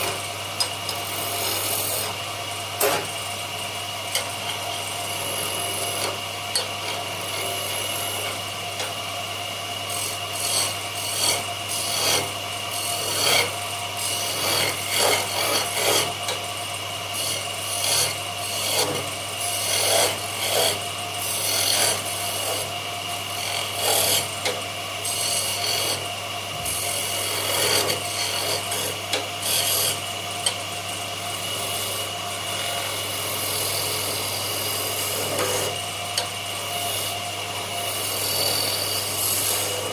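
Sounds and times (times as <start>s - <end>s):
steady hum: 0.0s - 39.9s
scraping and rubbing wood: 9.9s - 16.4s, 17.2s - 22.7s, 23.3s - 30.0s.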